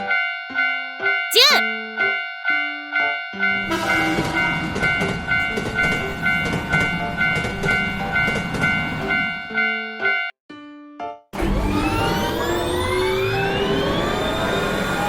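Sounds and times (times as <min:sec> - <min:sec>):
railroad crossing bell ringing: 0:00.0 - 0:10.4.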